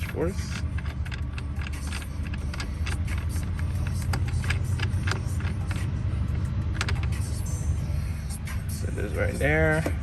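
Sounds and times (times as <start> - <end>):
steering wheel clicks and knocks: 0.0 - 7.4, 9.5 - 10.0
car engine idling hum: 0.0 - 10.0.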